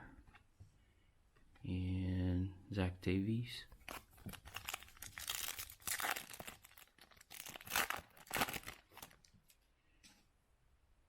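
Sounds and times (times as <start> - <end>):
wrapper crinkling and tearing: 3.8 - 9.6.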